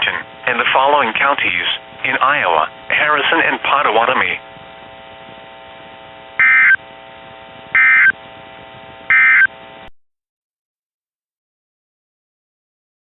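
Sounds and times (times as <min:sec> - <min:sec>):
receiver hum: 0:00.0 - 0:10.0
warbling digital data tones: 0:06.4 - 0:06.8, 0:07.8 - 0:08.2, 0:09.1 - 0:09.5.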